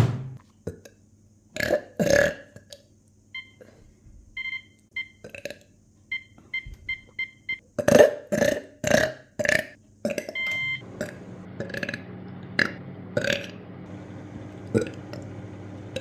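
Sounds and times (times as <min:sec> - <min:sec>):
person burping: 0:01.6 - 0:02.8, 0:05.2 - 0:05.6, 0:07.8 - 0:10.4, 0:11.0 - 0:13.6, 0:14.7 - 0:15.2
microwave keypad beeping: 0:03.4 - 0:03.6, 0:04.4 - 0:05.2, 0:06.1 - 0:07.6, 0:10.3 - 0:10.9.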